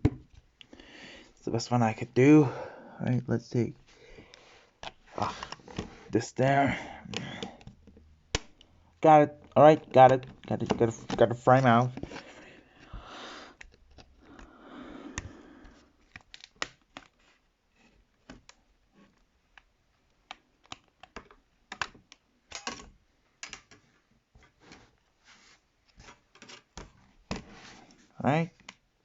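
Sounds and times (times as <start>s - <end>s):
clicks and taps of tablet parts: 7.0s - 8.7s, 19.6s - 23.9s.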